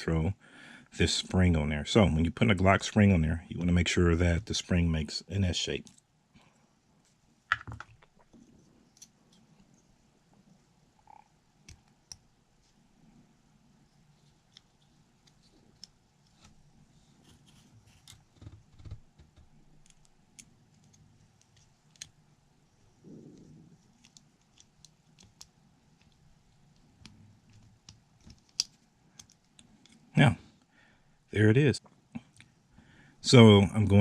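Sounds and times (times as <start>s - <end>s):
soft rustle: 12.5s - 18.6s
small metallic clicks and taps: 24.0s - 30.0s.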